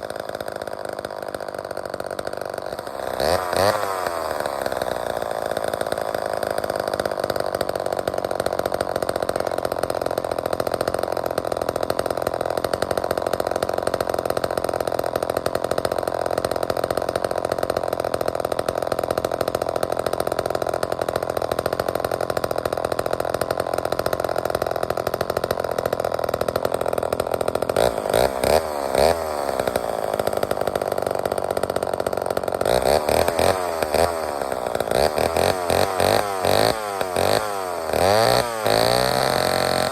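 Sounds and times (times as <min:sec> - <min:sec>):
two-stroke chainsaw engine running: 0:00.0 - 0:39.9.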